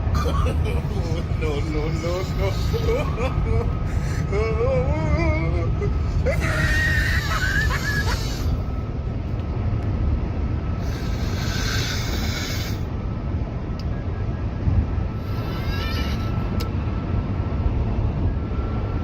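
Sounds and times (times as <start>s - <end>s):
low rumble: 0.0s - 19.0s
loud snoring: 10.9s - 12.8s.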